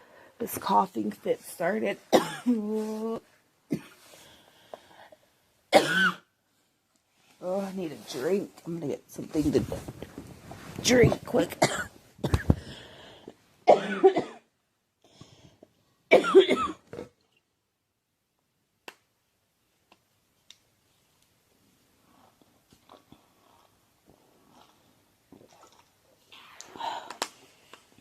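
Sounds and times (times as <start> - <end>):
woman coughing: 2.1 - 2.6, 3.7 - 4.0, 5.7 - 6.2, 11.6 - 12.5, 13.7 - 14.4, 16.1 - 16.8.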